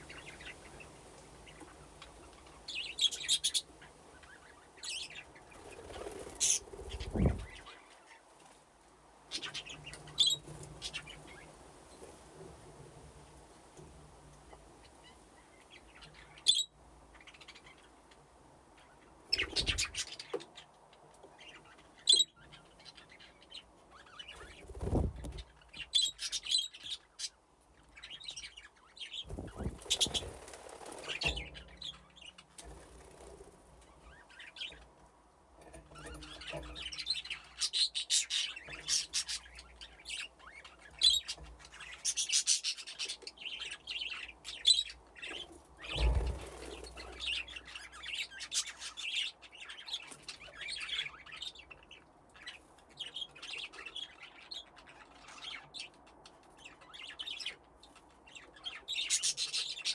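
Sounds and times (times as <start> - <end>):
budgerigars chirping: 2.7 - 3.7, 6.1 - 7.7, 9.3 - 11.2, 19.3 - 20.3, 21.5 - 23.2, 29.3 - 30.4, 36.1 - 51.6, 58.3 - 59.9.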